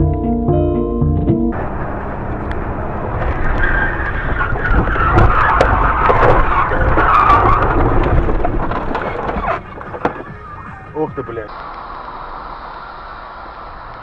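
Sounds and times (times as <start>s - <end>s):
music: 0.0s - 1.6s
road and tyre noise: 1.5s - 14.0s
loud tyre skid: 1.6s - 14.0s.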